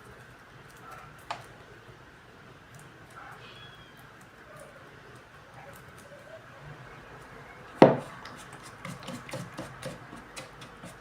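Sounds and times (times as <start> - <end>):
knock on mixing bowl: 7.8 - 8.1
taps and scrapes against bowl: 7.8 - 11.0.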